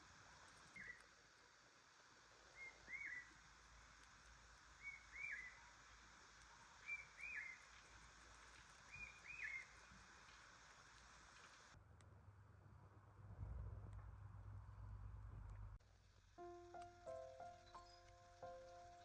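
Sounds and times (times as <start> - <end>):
background hiss: 0.0 - 11.8, 14.3 - 19.0
bird calling: 2.6 - 3.4, 4.8 - 5.8, 6.6 - 7.9, 8.9 - 9.9.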